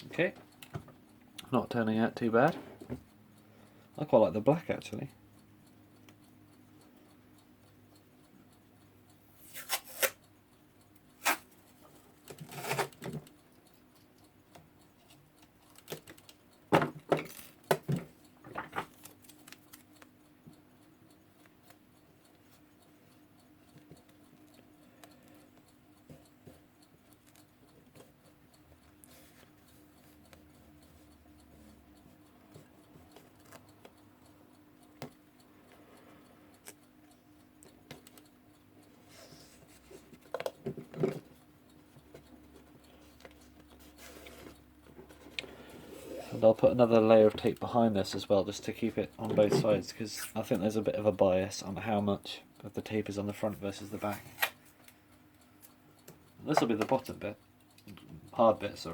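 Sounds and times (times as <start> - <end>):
faint steady hum: 0.0 - 58.9
tape rustles and clicks: 12.3 - 13.3.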